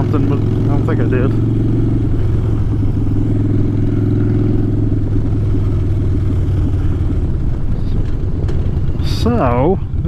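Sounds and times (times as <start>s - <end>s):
motorcycle engine running: 0.0s - 10.0s
wind rush on microphone: 1.8s - 10.0s.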